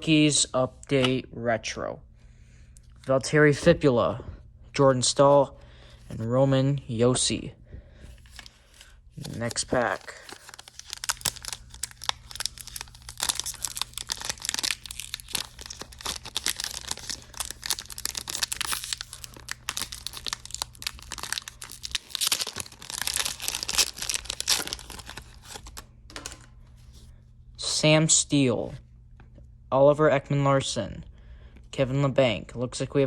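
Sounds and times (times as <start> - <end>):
steady low hum: 0.0 - 33.0
wrapper tearing and crinkling: 8.3 - 26.3.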